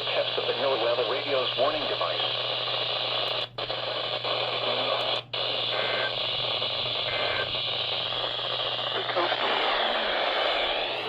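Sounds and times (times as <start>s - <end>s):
radio static hiss: 0.0s - 11.0s
steady low hum: 0.0s - 11.0s.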